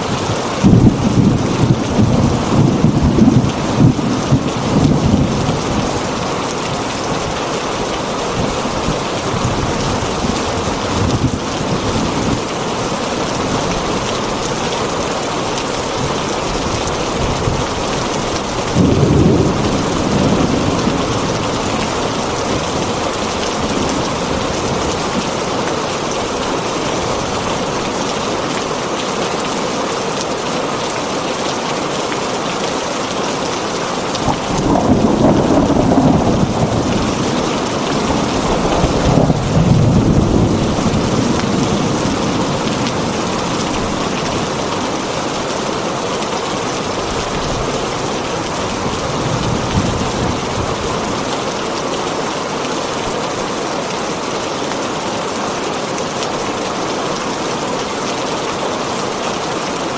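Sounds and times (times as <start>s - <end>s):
rain on a tin roof: 0.0s - 59.9s
thunder rumble: 16.5s - 25.3s, 34.1s - 44.9s.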